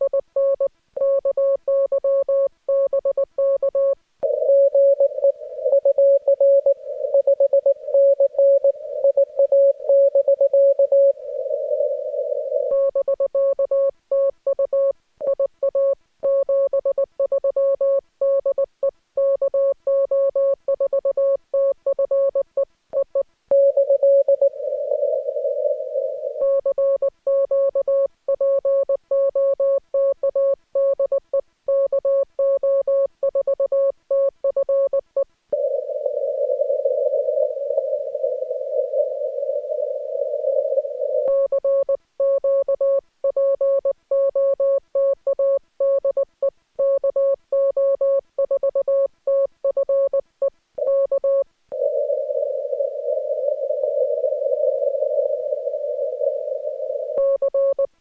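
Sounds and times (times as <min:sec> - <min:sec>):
radio hiss: 0:11.1 - 0:12.7, 0:24.4 - 0:26.4, 0:35.6 - 0:41.3, 0:51.8 - 0:57.2.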